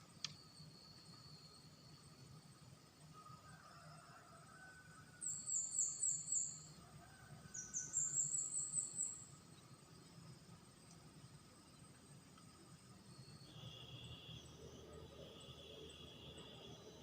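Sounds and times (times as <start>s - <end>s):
bird whistling song: 7.6s - 9.3s.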